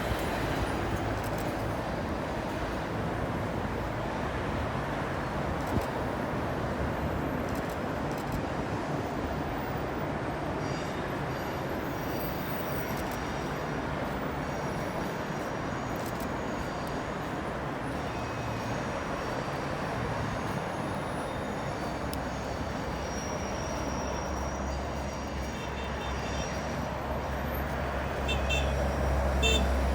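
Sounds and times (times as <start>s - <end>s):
train wheels rolling on track: 5.3s - 29.9s.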